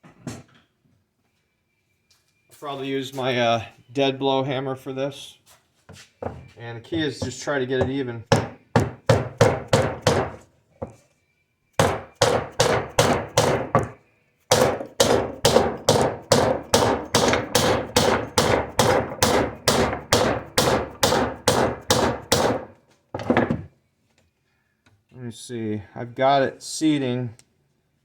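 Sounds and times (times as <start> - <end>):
hammer striking metal tool: 11.8 - 13.9, 14.5 - 22.7.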